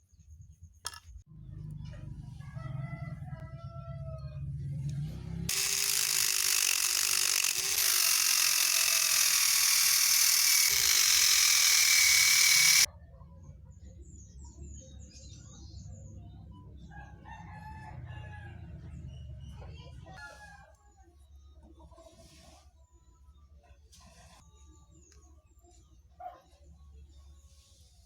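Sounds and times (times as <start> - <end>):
electric power tool whining: 5.5 - 12.9
harsh grinding hiss: 5.5 - 12.9.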